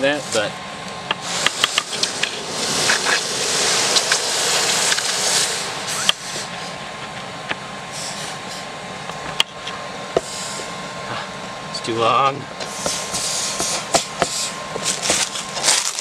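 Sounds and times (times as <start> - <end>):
loud rushing hiss: 0.0 - 6.9, 7.8 - 8.9, 10.1 - 11.4, 12.6 - 16.0
forge air blower running: 0.0 - 16.0.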